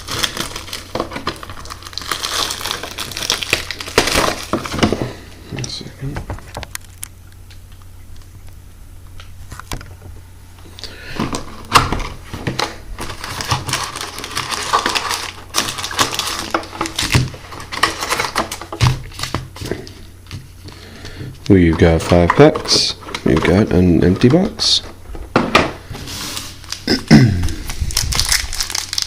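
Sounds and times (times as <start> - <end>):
cardboard box rustling and tearing: 0.0 - 4.9, 13.0 - 18.5.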